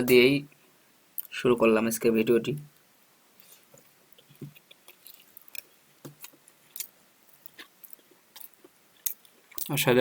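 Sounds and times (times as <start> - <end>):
person chewing and crunching: 4.1 - 9.8.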